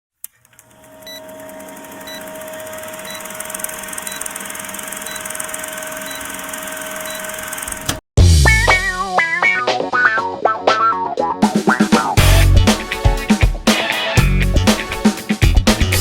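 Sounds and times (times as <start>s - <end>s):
electric train humming: 0.4s - 8.0s
music with guitar and drums: 8.2s - 16.0s.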